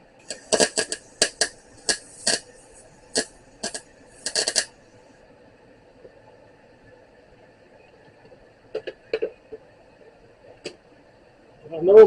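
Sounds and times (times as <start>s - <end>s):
welder arc crackling: 0.0s - 5.3s.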